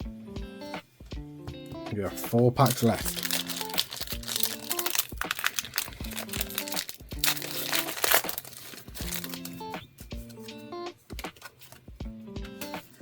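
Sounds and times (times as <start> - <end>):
background music with steady beat: 0.0 - 13.0
foil wrapper crinkling: 2.6 - 9.6.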